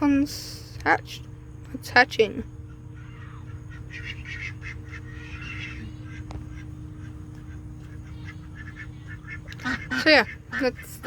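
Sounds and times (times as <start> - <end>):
ducks quacking: 2.6 - 11.0.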